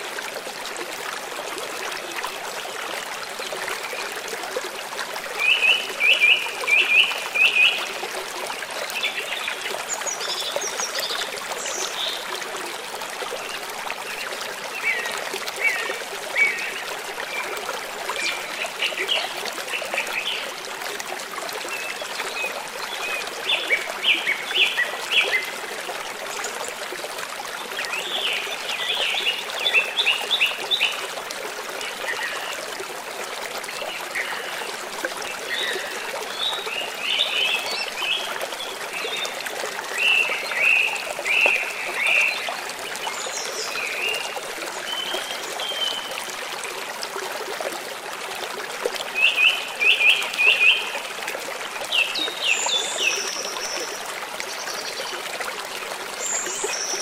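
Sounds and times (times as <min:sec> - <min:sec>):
stream running: 0:00.0 - 0:57.0.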